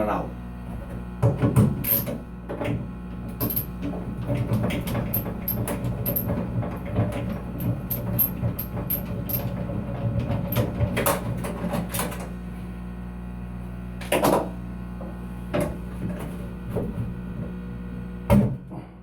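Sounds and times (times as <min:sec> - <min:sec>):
steady low hum: 0:00.0 - 0:19.0
fan motor clicks and rattles: 0:00.8 - 0:12.4, 0:14.0 - 0:17.6.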